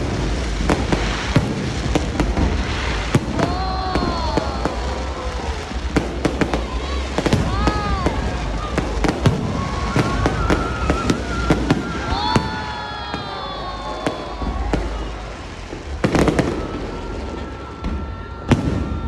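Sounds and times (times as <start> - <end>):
low rumble: 0.0 - 12.6
fireworks bangs and crackles: 0.0 - 19.0
whistling firework shells: 0.0 - 19.0.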